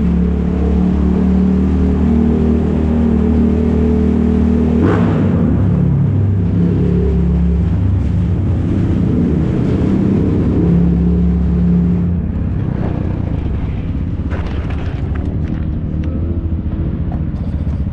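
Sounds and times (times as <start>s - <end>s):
atv engines running: 0.0s - 17.9s
clatter: 12.4s - 16.2s, 17.0s - 17.9s.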